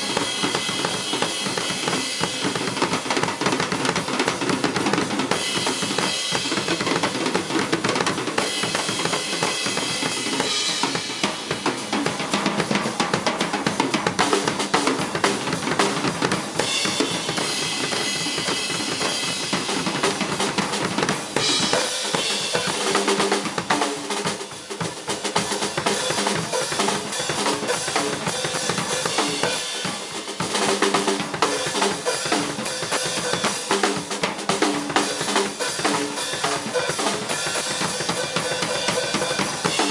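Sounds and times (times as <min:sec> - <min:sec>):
fast drum kit playing: 0:00.0 - 0:39.9.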